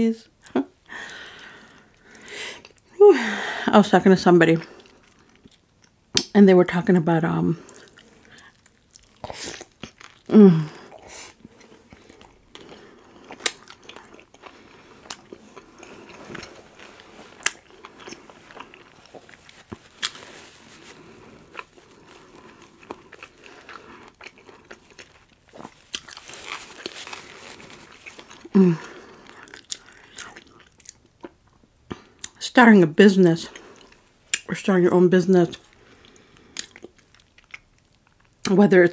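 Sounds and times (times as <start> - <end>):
person chewing and crunching food: 4.6 - 6.0, 7.6 - 32.4, 33.5 - 34.5, 35.5 - 38.5.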